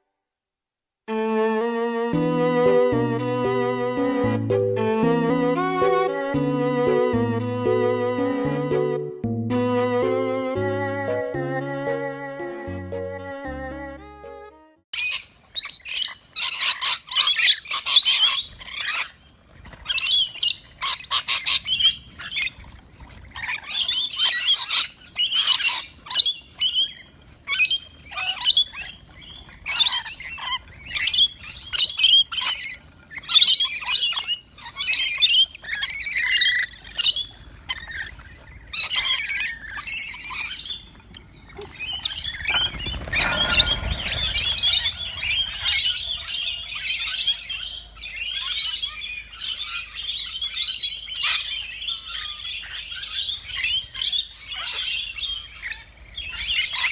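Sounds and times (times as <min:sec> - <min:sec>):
bird chirping and squawking: 0:41.7 - 0:55.4.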